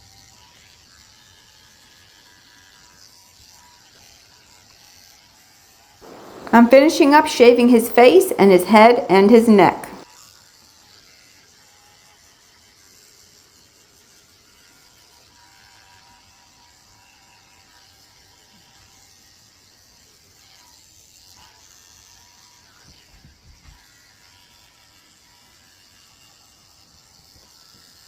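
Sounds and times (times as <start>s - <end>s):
electric clippers running: 6.0s - 6.5s.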